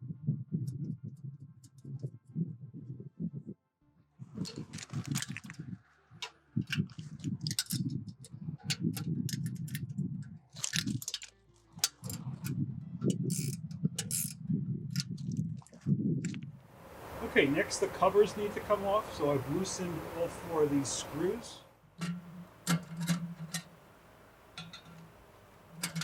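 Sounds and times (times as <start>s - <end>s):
handling rustle and knocks: 4.4s - 9.9s, 10.5s - 14.4s, 22.0s - 26.0s
metal fasteners clicking and rattling: 4.4s - 14.4s, 15.0s - 15.8s, 22.0s - 23.9s, 24.5s - 26.0s.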